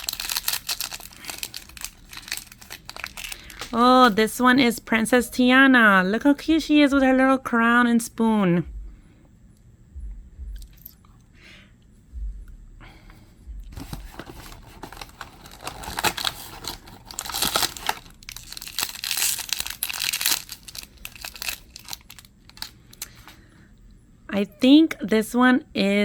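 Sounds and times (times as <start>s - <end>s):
plastic package crinkling and tearing: 0.0s - 4.2s, 13.8s - 23.3s.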